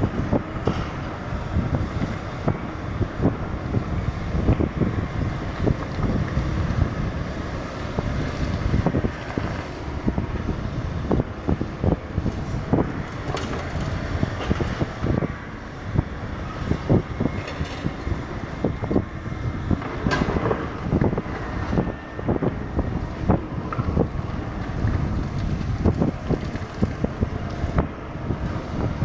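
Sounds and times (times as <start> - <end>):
excavator engine drone: 0.0 - 29.0.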